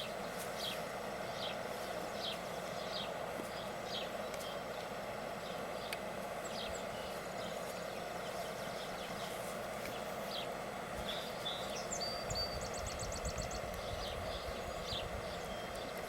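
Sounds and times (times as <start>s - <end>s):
steady background hum: 0.0s - 16.0s
bird chirping: 5.4s - 16.0s.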